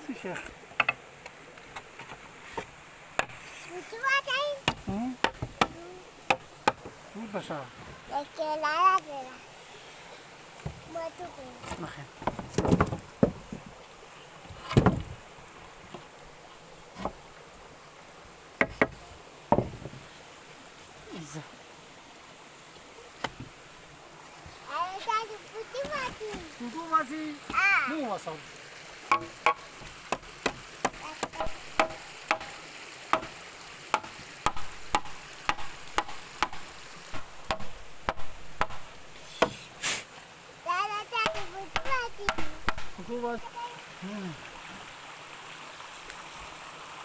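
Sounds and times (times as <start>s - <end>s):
knocks: 11.6s - 13.7s, 14.6s - 15.2s, 18.6s - 20.0s, 29.1s - 39.6s, 41.2s - 43.3s.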